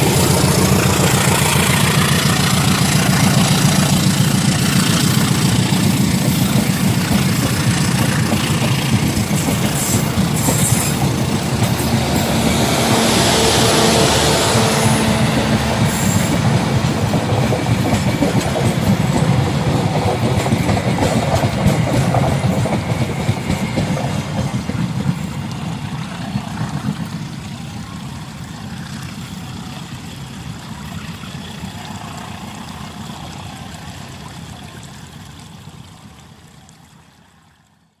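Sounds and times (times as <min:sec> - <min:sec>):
train wheels clattering over rails: 0:00.0 - 0:30.3.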